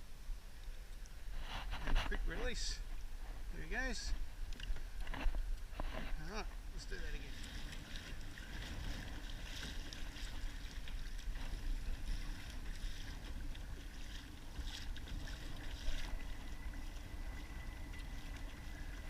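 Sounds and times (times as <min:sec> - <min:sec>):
wind rumbling on microphone: 0:00.0 - 0:19.0
water splashing against kayak hull: 0:04.2 - 0:19.0.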